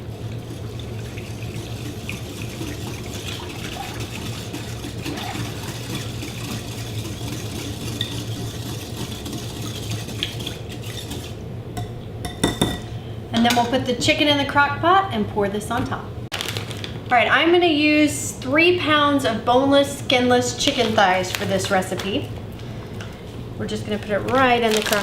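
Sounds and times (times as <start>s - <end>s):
whisk swishing liquid in bowl: 0.0s - 11.5s.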